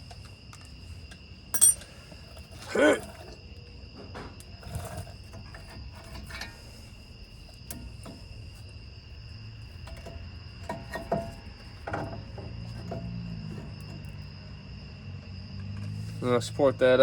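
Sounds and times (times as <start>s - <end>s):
crickets trilling: 0.0s - 17.0s
metallic clinks of tools: 1.5s - 2.0s.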